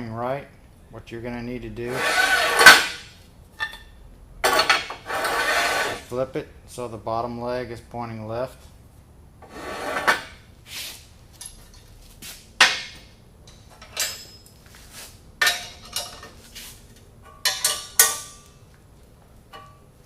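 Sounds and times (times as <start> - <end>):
metal parts clinking and knocking: 12.6 - 14.6, 15.4 - 16.4.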